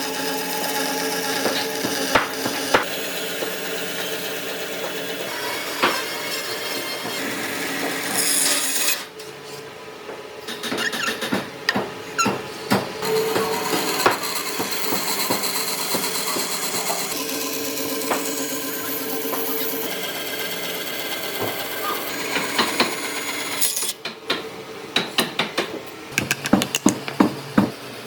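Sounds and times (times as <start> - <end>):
wood knocking: 25.4 - 27.8.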